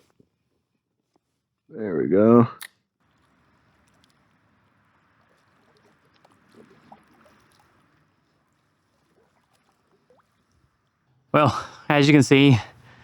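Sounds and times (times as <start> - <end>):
faint water sounds: 3.0 - 13.0
soft ticks around kayak: 3.1 - 4.6.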